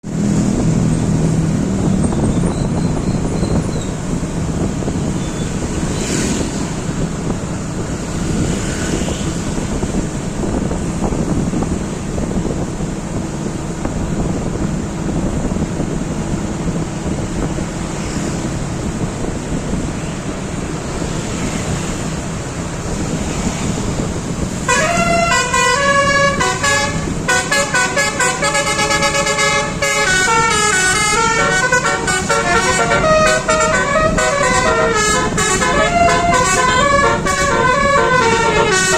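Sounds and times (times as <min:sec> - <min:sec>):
bus engine and road noise: 0:00.0 - 0:38.9
multi-tone bus horn melody: 0:24.4 - 0:38.9.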